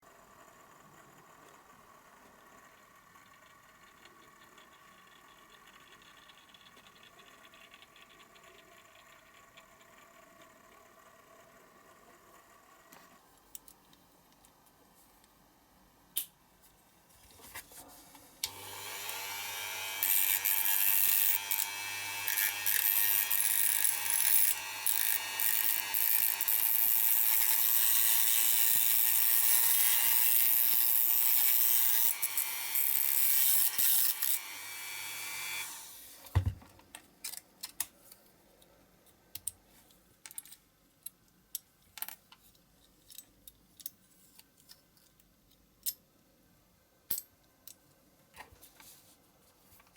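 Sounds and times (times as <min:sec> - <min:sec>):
small electric power tool running: 0:18.5 - 0:36.2
thump: 0:36.3 - 0:36.7
small metal parts clicking: 0:40.2 - 0:46.1.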